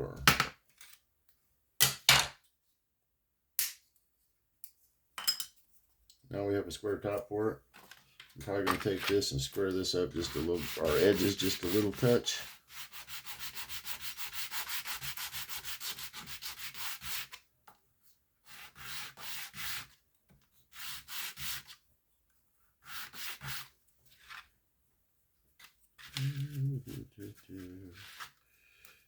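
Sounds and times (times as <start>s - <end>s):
hand sanding wood: 9.6s - 17.4s, 18.5s - 20.0s, 20.7s - 21.8s, 22.8s - 23.7s, 26.9s - 28.4s.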